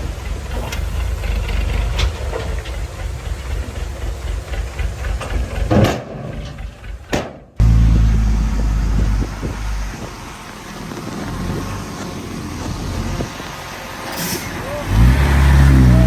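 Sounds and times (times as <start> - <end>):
heavy diesel engine running: 0.0 - 16.0.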